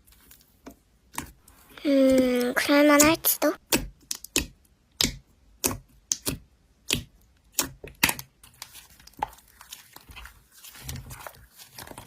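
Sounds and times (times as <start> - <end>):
slime crinkly crackling: 8.4 - 12.0.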